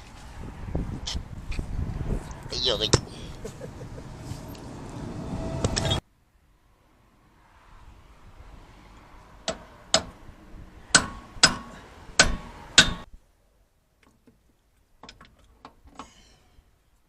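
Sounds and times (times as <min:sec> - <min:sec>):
tools striking metal: 0:10.9 - 0:13.1.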